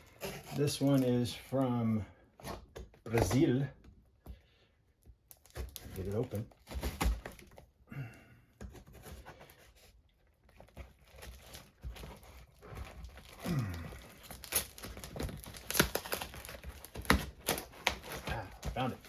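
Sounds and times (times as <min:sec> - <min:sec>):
packaging crinkling and tearing: 0:00.0 - 0:01.6, 0:05.3 - 0:07.7, 0:08.9 - 0:19.0.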